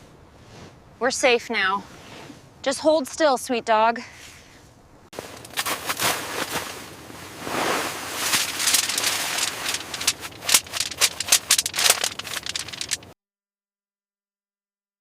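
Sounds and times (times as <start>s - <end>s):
rustling and scraping: 4.3s - 13.2s
quick sharp crackles: 5.2s - 13.2s.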